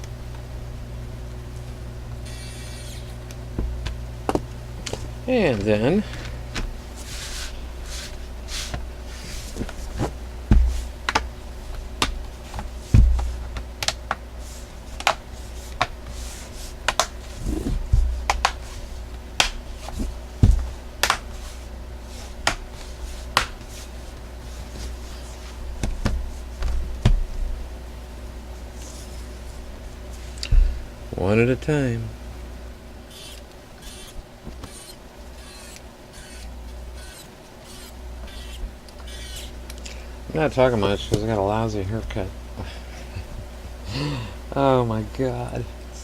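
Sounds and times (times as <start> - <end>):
dull knocks: 10.5 - 11.3, 19.4 - 21.2.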